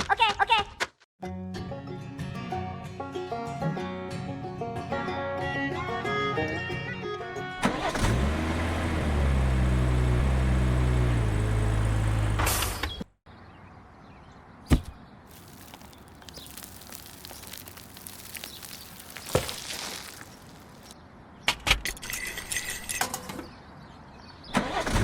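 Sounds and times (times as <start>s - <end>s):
banjo-like music: 1.2s - 7.6s
engine humming: 7.6s - 12.9s.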